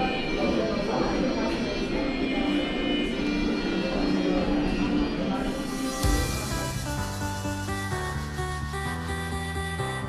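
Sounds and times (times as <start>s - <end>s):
melody over steady backing: 4.1s - 10.0s.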